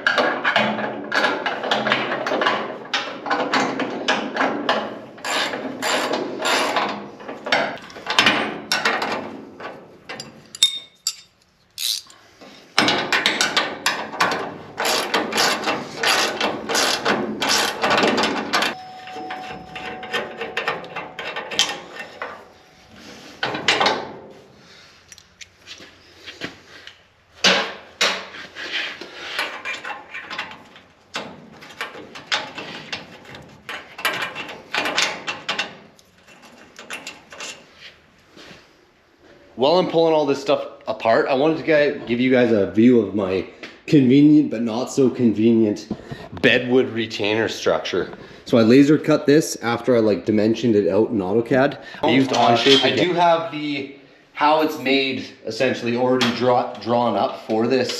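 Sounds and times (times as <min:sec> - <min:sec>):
ratchet wrench clicking: 0:10.6 - 0:12.2.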